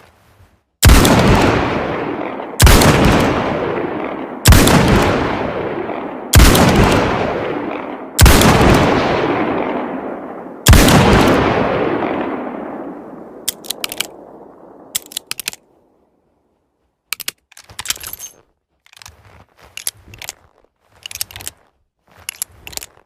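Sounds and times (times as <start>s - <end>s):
revolver gunshots with echo: 0.8s - 15.2s.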